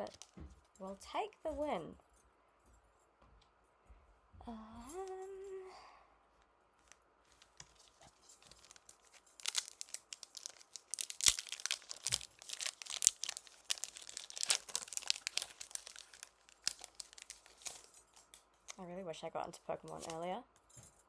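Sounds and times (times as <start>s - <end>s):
foil wrapper crinkling and tearing: 7.3s - 18.8s.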